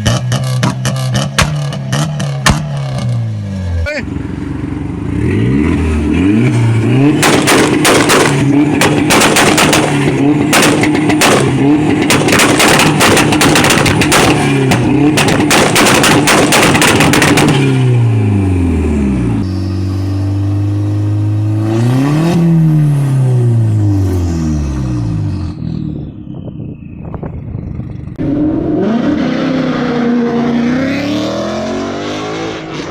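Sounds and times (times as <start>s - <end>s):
exhaust pops and bangs: 0.0s - 3.2s, 7.1s - 17.7s
car engine revving: 0.0s - 32.9s.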